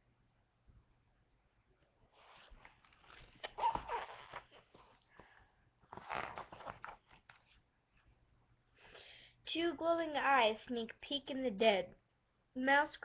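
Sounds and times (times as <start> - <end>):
book page turning: 2.2 - 5.0, 5.9 - 7.6.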